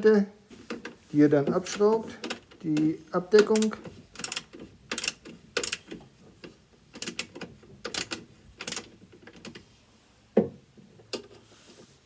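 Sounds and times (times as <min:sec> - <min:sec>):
ratchet wrench clicking: 0:03.6 - 0:06.0, 0:07.0 - 0:08.9.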